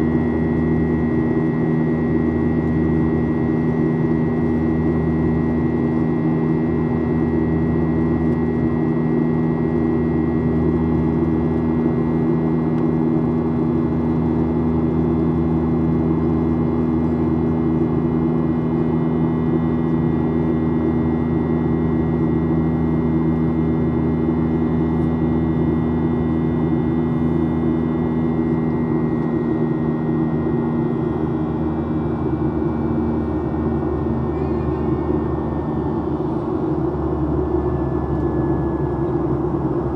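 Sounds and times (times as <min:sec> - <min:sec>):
jet engine drone and airflow: 0:00.0 - 0:39.9
thin high whine: 0:32.5 - 0:39.5.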